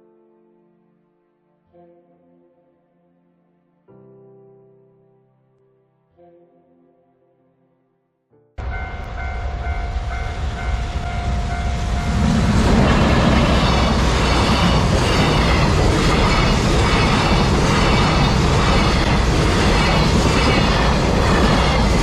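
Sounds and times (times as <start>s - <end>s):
freight train passing: 8.6s - 22.0s
train wheels clattering on rails: 8.6s - 22.0s.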